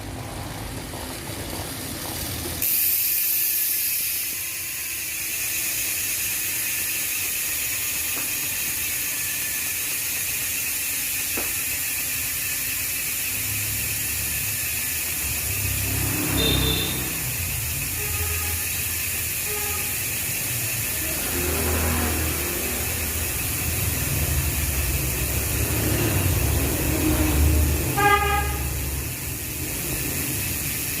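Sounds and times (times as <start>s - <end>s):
traffic rumble: 13.2s - 31.0s
horn toot: 15.9s - 18.8s, 27.8s - 28.9s.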